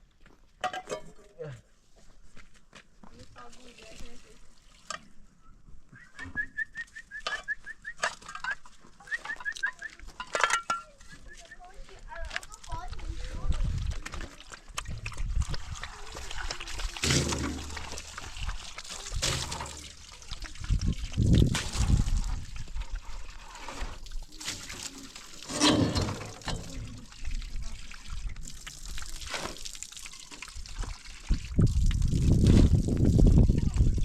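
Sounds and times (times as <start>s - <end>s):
water trickling: 12.6s - 34.0s.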